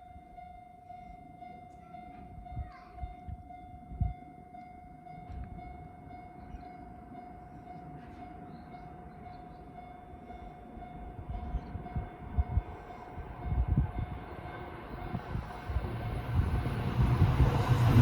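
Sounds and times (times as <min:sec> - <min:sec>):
train rumble: 0:05.1 - 0:18.0.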